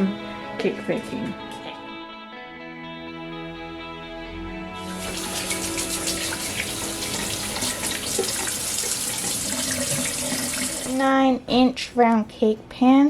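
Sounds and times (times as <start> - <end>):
water splashing into a sink: 5.0 - 11.0.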